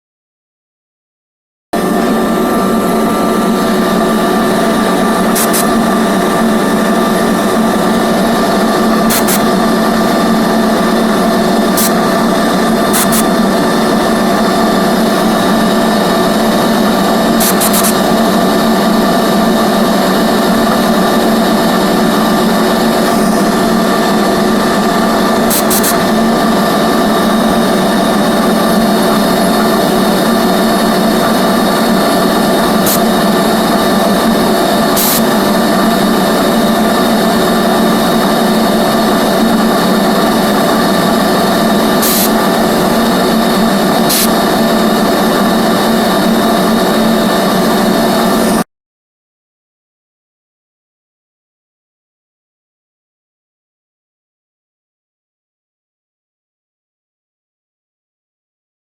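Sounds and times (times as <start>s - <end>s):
router spindle cutting with whine: 1.8s - 48.6s.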